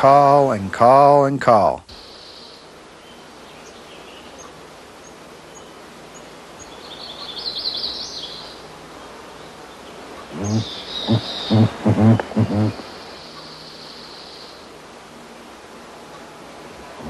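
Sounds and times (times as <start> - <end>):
faint bird chirps: 1.9 - 14.7
bird warbling trill: 9.3 - 14.7
grouse low hoot: 10.2 - 13.6.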